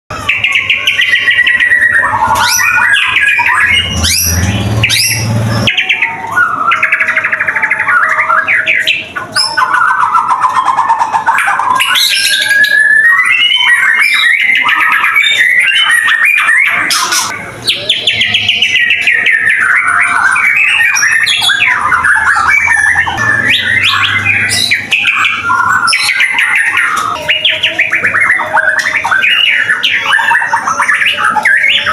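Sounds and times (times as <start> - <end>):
bird singing varied song: 0.1 - 31.9.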